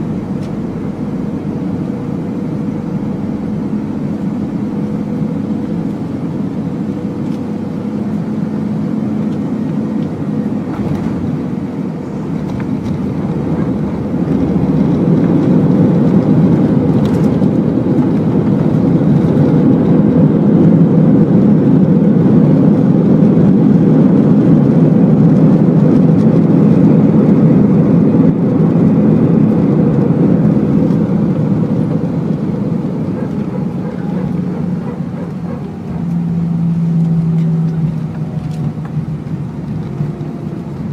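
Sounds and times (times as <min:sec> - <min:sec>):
aircraft engine roar in cabin: 0:00.0 - 0:40.9.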